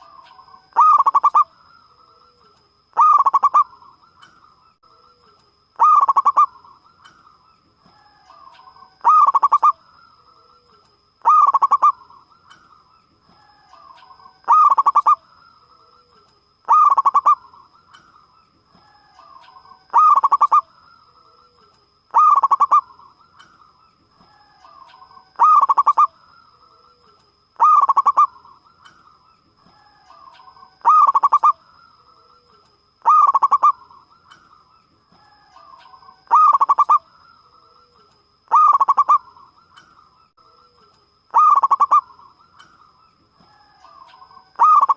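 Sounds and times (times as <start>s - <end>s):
dove cooing: 0.0s - 4.0s, 5.2s - 6.7s, 8.0s - 12.3s, 13.4s - 15.2s, 15.8s - 17.8s, 18.8s - 23.5s, 24.2s - 28.7s, 29.7s - 34.4s, 35.3s - 39.5s, 40.8s - 42.7s, 43.5s - 44.9s
faint steady high tone: 0.0s - 44.9s.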